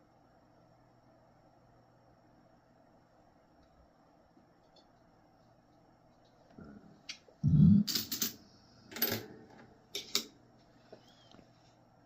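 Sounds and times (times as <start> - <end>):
coins clicking on hard surface: 7.9 - 9.3.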